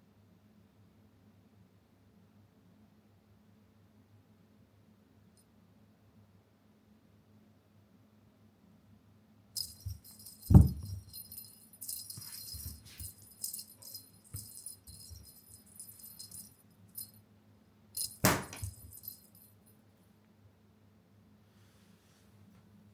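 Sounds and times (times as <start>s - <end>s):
small bell jingling: 9.6s - 17.2s, 18.0s - 19.7s
loud thump: 9.9s - 11.1s, 18.2s - 18.9s.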